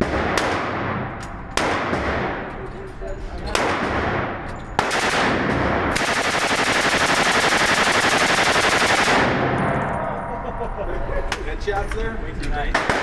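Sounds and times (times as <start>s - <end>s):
machine gun automatic burst: 4.8s - 9.7s.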